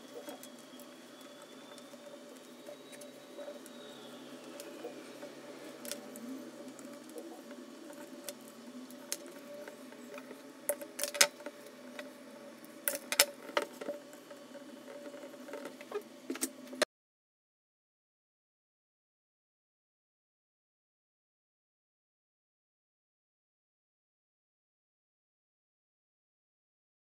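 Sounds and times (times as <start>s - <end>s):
small parts clicking and knocking: 0.0s - 16.8s
steady low hum: 0.0s - 16.8s.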